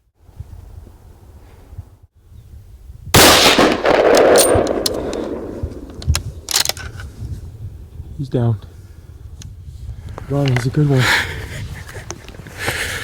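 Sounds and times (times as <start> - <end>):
rifle shot echoing: 3.2 - 6.6
sharp clicks and knocks: 3.8 - 7.0.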